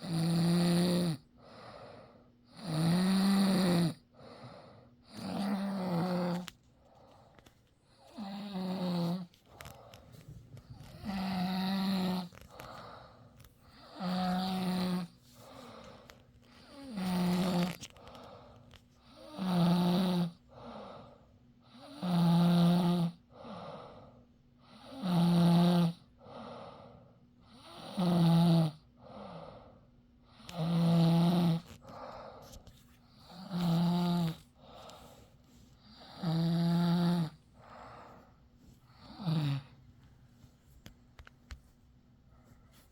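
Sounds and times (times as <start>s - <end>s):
loud pitched snoring: 0.0s - 1.2s, 2.6s - 4.0s, 5.1s - 6.5s, 8.2s - 9.3s, 10.9s - 12.3s, 13.8s - 15.1s, 19.2s - 20.4s, 21.8s - 23.2s, 24.9s - 26.0s, 30.5s - 31.7s, 35.9s - 37.4s, 39.0s - 39.7s
quiet breathing: 0.7s - 22.1s, 22.9s - 25.0s, 25.9s - 28.0s, 28.7s - 42.9s.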